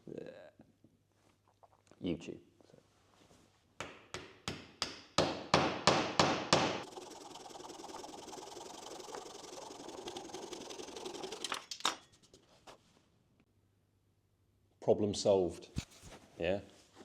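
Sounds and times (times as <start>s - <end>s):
hammer tapping wooden plug: 3.8s - 6.8s
rasping noise: 6.8s - 12.7s.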